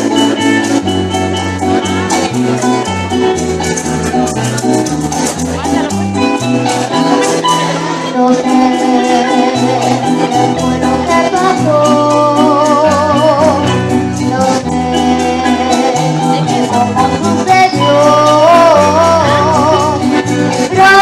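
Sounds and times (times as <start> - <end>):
harp and maracas ensemble: 0.0 - 21.0
person singing with vibrato: 7.5 - 21.0.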